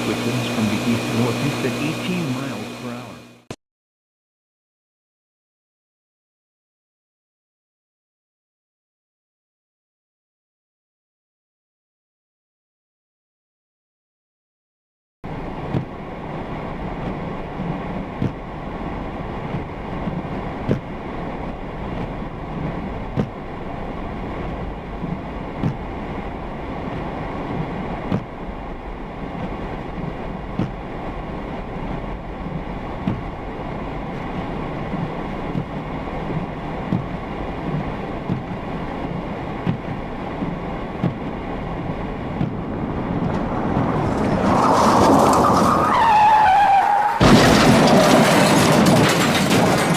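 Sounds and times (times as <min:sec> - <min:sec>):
vehicle rumble: 0:16.4 - 0:46.2.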